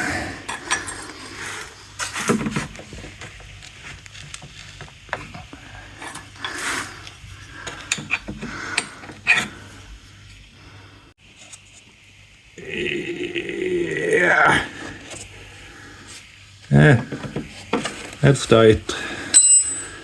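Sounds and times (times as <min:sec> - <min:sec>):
hand tool clicks and scrapes: 0:00.4 - 0:02.9, 0:03.6 - 0:09.7.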